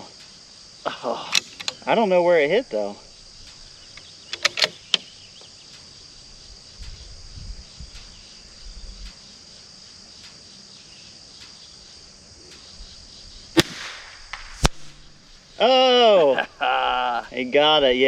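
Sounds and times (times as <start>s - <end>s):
crickets chirring: 0.0s - 18.0s
light clicks: 1.2s - 1.9s, 3.4s - 5.9s
rifle shot: 13.6s - 15.1s.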